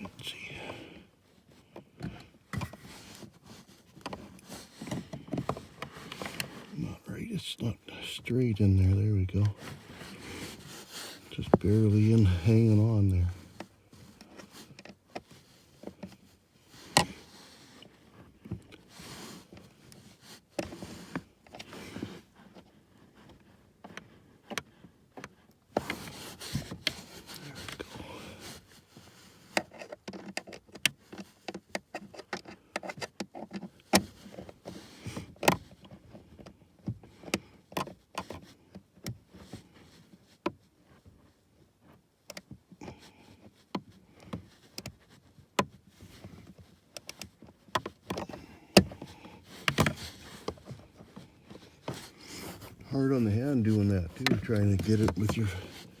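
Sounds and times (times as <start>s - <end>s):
rustling and handling knocks: 45.5s - 56.0s.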